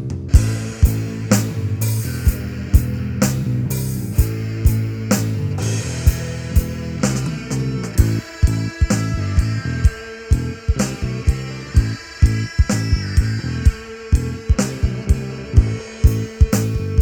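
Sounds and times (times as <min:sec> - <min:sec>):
low bass notes: 0:00.0 - 0:17.0
drum hits: 0:00.3 - 0:08.9.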